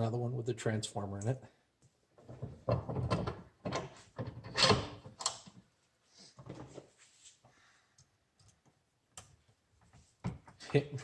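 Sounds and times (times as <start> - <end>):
faint rustling and small clicks: 5.1 - 10.8.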